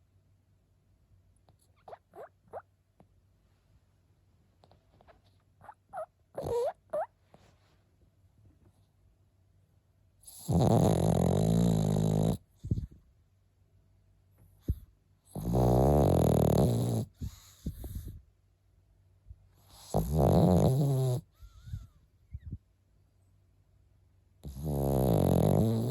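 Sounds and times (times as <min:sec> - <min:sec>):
dog snoring: 0:05.6 - 0:07.1, 0:10.2 - 0:12.9, 0:14.6 - 0:18.2, 0:19.6 - 0:21.9, 0:24.4 - 0:25.9
dog snuffles: 0:10.3 - 0:13.0, 0:14.6 - 0:18.2, 0:19.6 - 0:21.8, 0:24.5 - 0:25.9.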